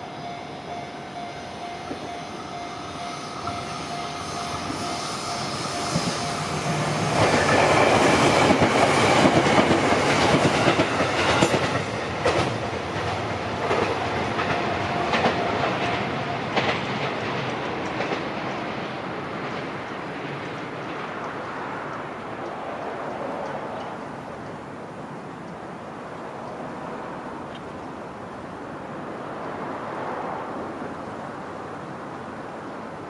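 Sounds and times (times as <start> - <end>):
crossing warning bell ringing: 0.0 - 9.4, 12.5 - 20.0
train rumbling past: 0.0 - 33.0
wheels clacking over rail joints: 3.4 - 24.7.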